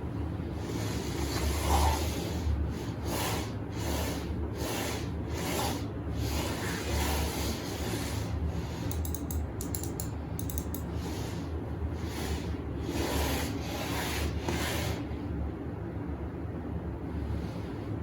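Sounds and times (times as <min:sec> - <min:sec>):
rubbing strokes: 0:00.6 - 0:08.9, 0:12.0 - 0:15.1
light clicks: 0:08.9 - 0:10.9.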